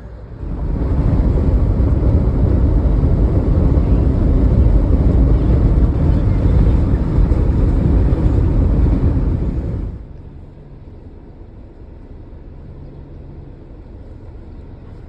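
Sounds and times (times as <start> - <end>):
wind buffeting microphone: 0.0 - 10.0
road noise in car: 0.0 - 15.0.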